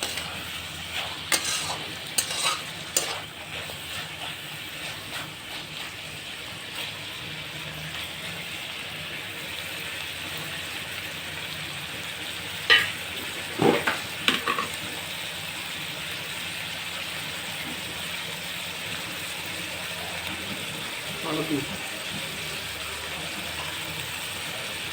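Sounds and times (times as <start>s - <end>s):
curry sizzling in a pan: 0.0s - 24.9s
spoon knocking against pan: 13.8s - 14.7s.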